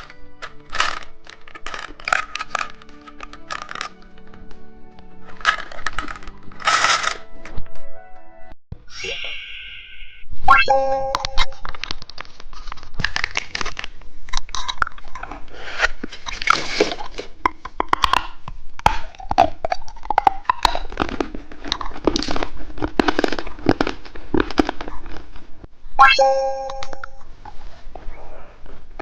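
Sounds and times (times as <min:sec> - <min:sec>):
crunching and chewing candy: 0:00.0 - 0:07.2, 0:11.6 - 0:25.7.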